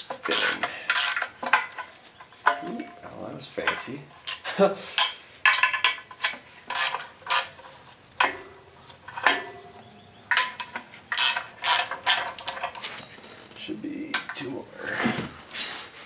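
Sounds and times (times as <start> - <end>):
ratchet wrench clicking: 0.0 - 1.6, 5.0 - 7.6, 10.3 - 12.7.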